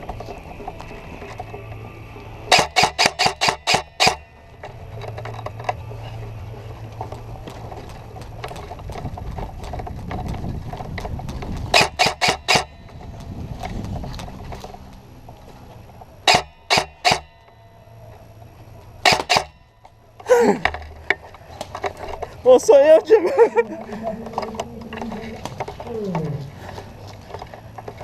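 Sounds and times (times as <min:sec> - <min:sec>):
airsoft gun shots: 0:02.5 - 0:04.3, 0:11.7 - 0:12.8, 0:16.2 - 0:17.4, 0:19.0 - 0:19.6
low rumble: 0:23.4 - 0:28.0.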